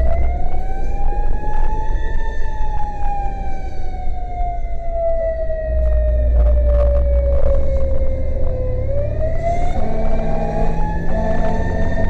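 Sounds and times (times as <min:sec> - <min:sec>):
fire engine siren wailing: 0:00.0 - 0:12.0
low rumble: 0:00.0 - 0:12.0.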